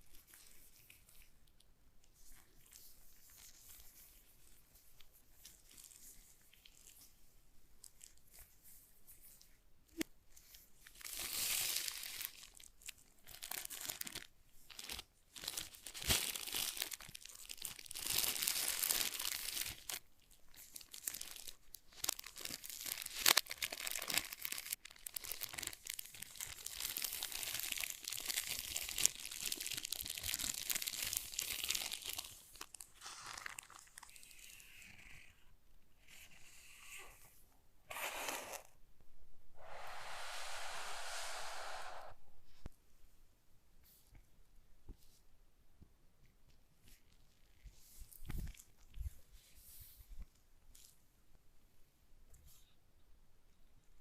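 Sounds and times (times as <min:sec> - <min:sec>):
packaging crinkling and tearing: 0:10.9 - 0:34.6.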